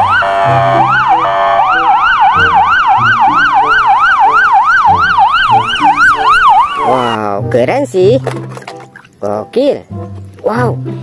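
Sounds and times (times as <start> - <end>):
electronic police siren wailing: 0.0 - 7.2
simple electronic tune: 0.0 - 7.2
slower sweeping siren tone: 0.0 - 7.2.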